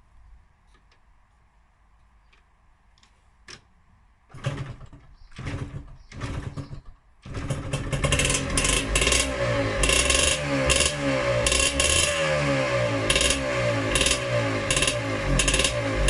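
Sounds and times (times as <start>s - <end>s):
two-stroke engine starting: 4.3s - 16.0s.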